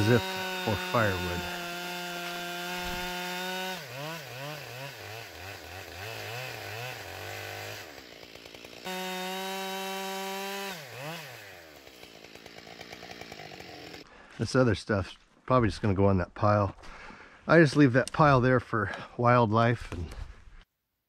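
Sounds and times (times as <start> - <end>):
chainsaw cutting wood: 0.0 - 14.1.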